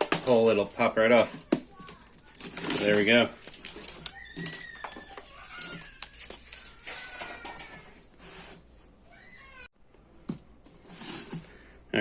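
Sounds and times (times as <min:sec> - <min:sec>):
cardboard squeaking: 0:01.1 - 0:08.5.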